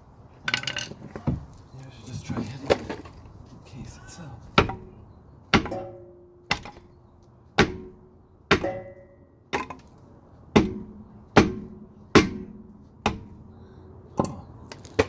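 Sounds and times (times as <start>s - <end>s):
hammer striking metal housing: 5.6s - 6.9s, 7.6s - 9.8s, 10.6s - 13.4s.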